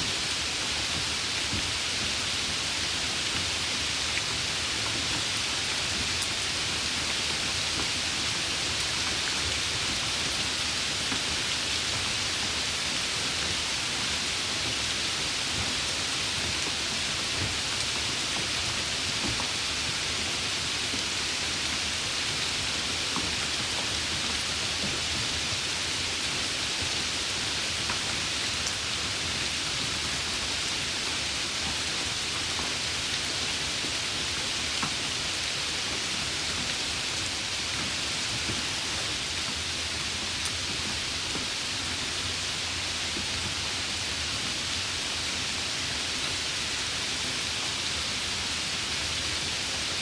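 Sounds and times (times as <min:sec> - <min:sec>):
steady rain hiss: 0:00.0 - 0:50.0.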